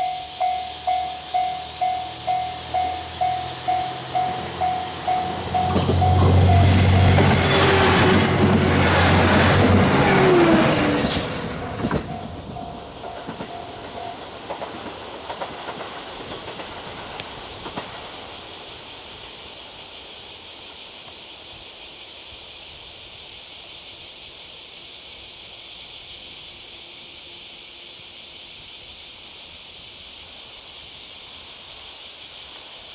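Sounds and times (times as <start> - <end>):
steady high hiss: 0.0 - 9.4, 10.7 - 32.9
level crossing alarm ringing: 0.0 - 14.4
train wheel clatter: 0.0 - 19.1.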